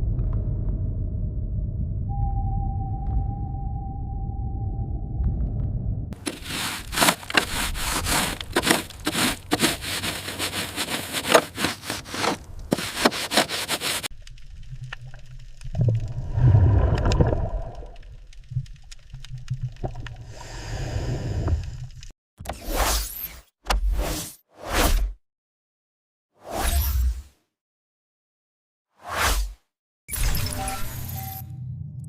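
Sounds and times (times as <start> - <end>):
low rumble: 0.0 - 6.2
harsh scraping with crackles: 6.2 - 20.2.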